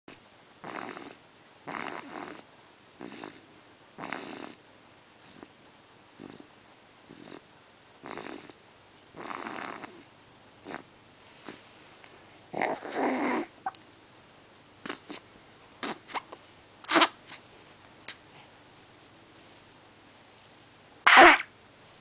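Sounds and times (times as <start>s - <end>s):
small pet snoring: 0.6s - 4.6s, 5.2s - 11.6s, 12.5s - 13.5s.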